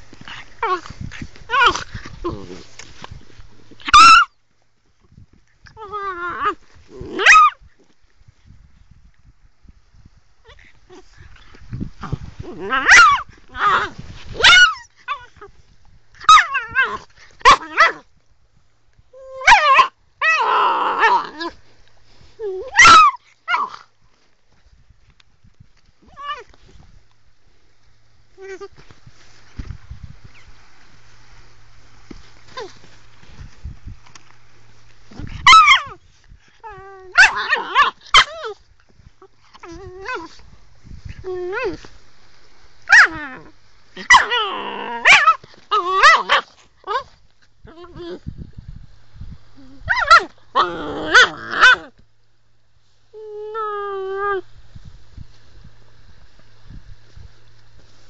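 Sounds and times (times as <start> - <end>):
puppy barking and yapping: 3.8 - 4.4, 5.9 - 7.6, 12.6 - 15.4, 16.2 - 18.0, 19.3 - 21.6, 22.5 - 23.8, 35.2 - 36.0, 36.6 - 38.6, 42.9 - 47.2, 49.8 - 51.9
puppy whining: 3.8 - 4.4, 22.4 - 23.8, 35.2 - 36.0
puppy growling snarl: 49.9 - 51.9.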